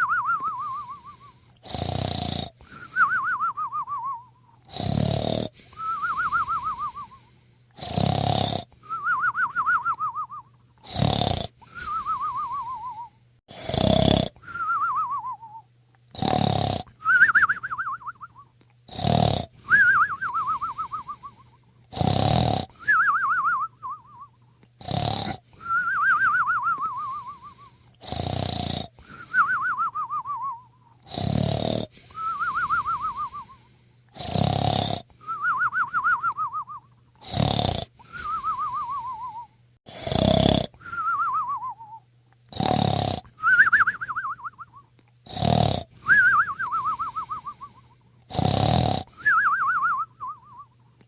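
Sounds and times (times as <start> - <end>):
faint steady hum: 0.0 - 51.0
rasping snore: 0.5 - 3.1, 4.6 - 8.7, 10.8 - 14.4, 16.1 - 17.0, 18.9 - 23.0, 24.8 - 25.9, 26.8 - 29.6, 31.0 - 35.4, 37.2 - 40.9, 42.5 - 43.3, 45.3 - 49.4.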